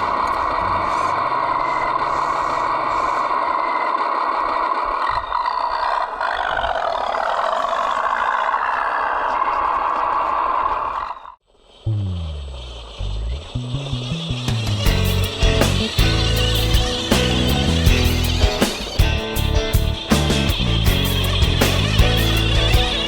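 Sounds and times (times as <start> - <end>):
model tractor whine and rattling: 0.0 - 5.0, 12.5 - 23.0.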